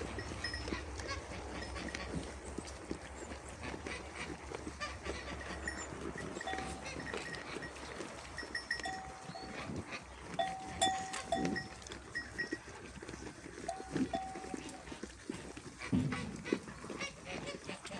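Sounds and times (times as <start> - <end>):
sheep neck bells clinking: 0.0 - 2.7, 5.1 - 15.4
sheep bleating: 4.8 - 9.7.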